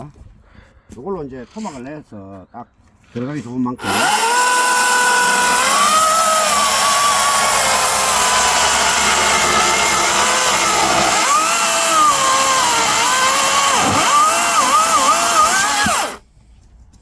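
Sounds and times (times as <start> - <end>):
electric chainsaw cutting a log: 3.8 - 16.2.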